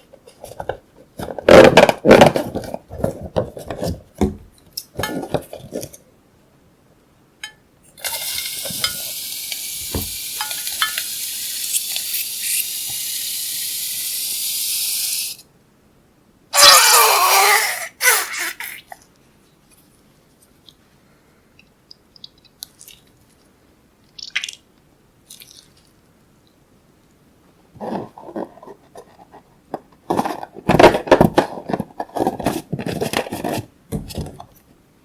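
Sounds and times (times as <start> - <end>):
steady high hiss: 7.1 - 16.6.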